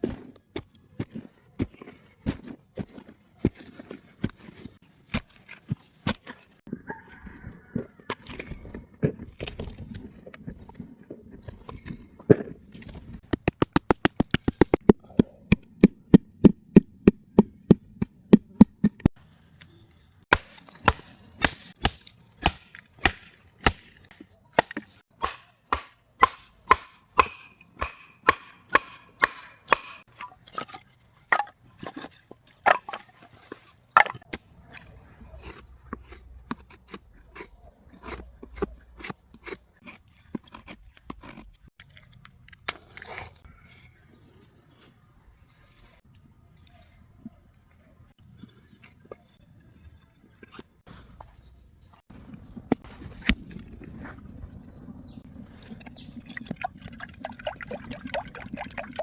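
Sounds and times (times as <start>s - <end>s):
chopping strikes on wood: 20.3s - 30.1s.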